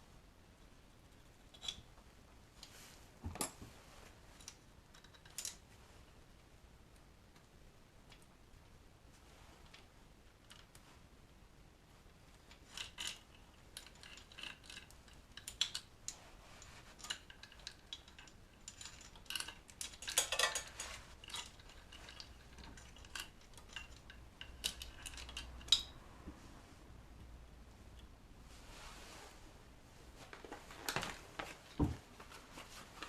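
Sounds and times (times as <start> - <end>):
metal tools clinking: 16.6 - 26.0.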